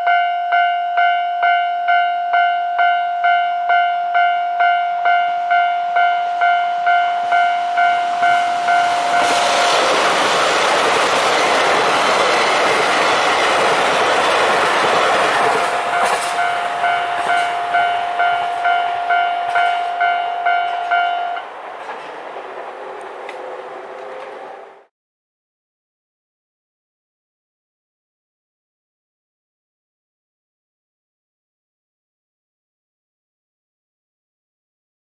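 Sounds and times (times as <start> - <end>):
level-crossing warning bell: 0.0 - 10.1, 14.2 - 23.0
diesel train passing: 2.3 - 24.9.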